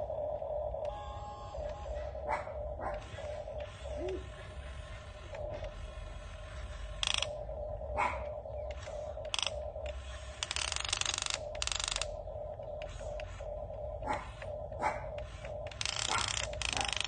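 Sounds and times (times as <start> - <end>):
steady hum: 0.0 - 17.0
geared mechanism clicking: 6.9 - 7.5, 8.7 - 17.0
ratcheting buzz: 6.9 - 7.5, 8.7 - 12.2, 15.3 - 17.0.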